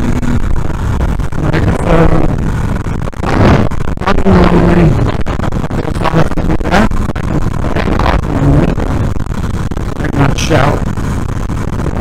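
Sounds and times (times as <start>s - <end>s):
wind and road noise rumble: 0.0s - 12.0s.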